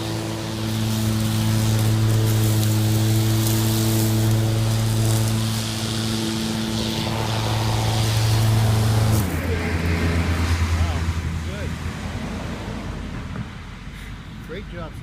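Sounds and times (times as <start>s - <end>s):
electric lawn mower running: 0.0s - 11.4s.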